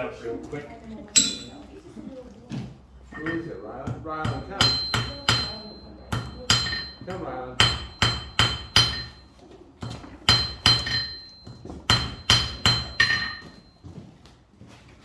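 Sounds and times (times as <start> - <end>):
hammer striking nail on anvil: 3.2 - 13.6.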